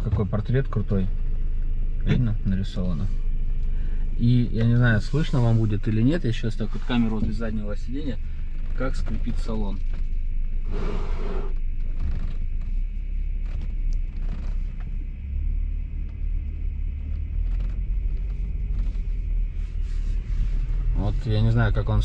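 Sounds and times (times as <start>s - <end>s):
low road rumble: 0.0s - 22.0s
interior trim creaks and clicks: 11.5s - 15.1s, 16.0s - 19.3s.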